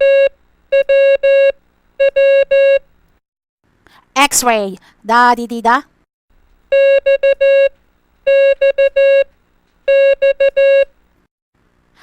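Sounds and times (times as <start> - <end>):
morse code beeps: 0.0 - 2.8, 6.7 - 7.7, 8.3 - 9.3, 9.9 - 10.9.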